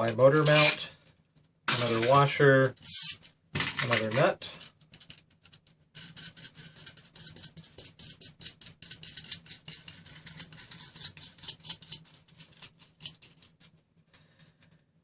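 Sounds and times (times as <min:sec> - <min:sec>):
metal nut rattling on threaded rod: 0:02.8 - 0:13.8.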